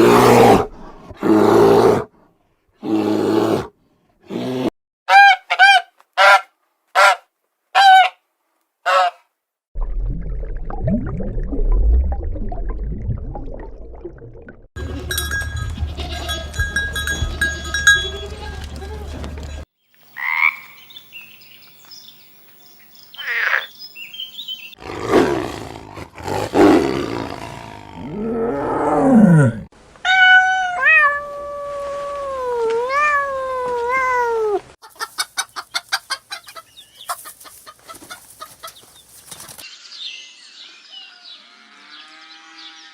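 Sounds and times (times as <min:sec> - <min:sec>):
animal cries: 0:30.1 - 0:34.7.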